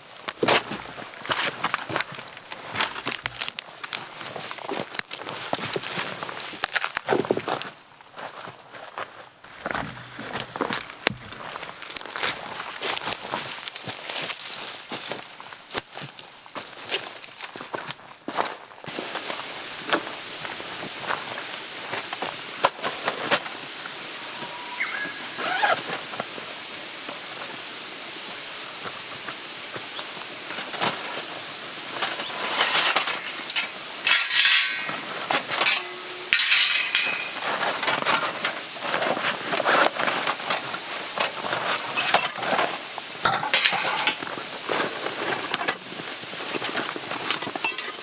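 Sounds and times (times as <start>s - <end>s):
steady hiss: 9.4s - 16.7s, 18.9s - 48.0s
metal cookware clinking: 32.2s - 38.6s, 42.0s - 42.6s, 43.2s - 44.2s, 47.1s - 48.0s.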